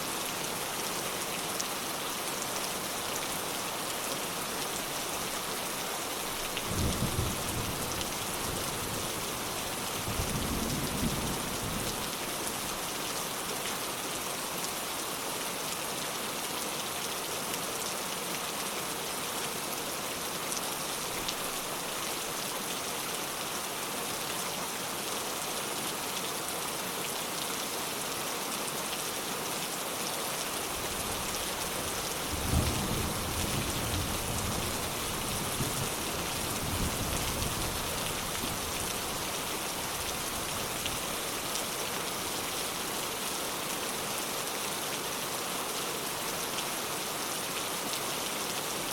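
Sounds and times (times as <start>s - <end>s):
rain pattering: 0.2s - 13.5s, 21.0s - 22.4s, 30.4s - 43.7s.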